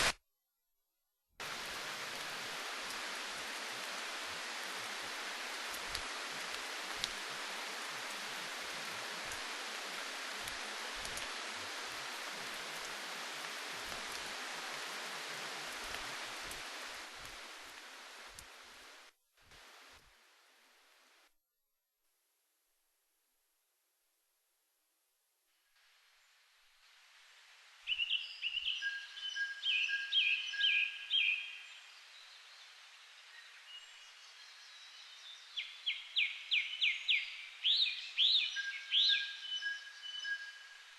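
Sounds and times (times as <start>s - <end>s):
steady hiss: 1.4s - 21.3s, 25.5s - 40.9s
faint ticks: 5.7s - 7.2s, 10.4s - 11.3s.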